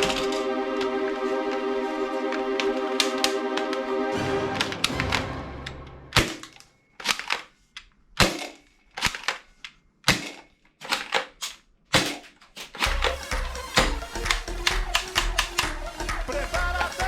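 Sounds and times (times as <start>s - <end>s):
background music: 0.0s - 6.6s, 12.8s - 17.0s
toy guns firing: 6.2s - 7.5s, 8.2s - 15.8s.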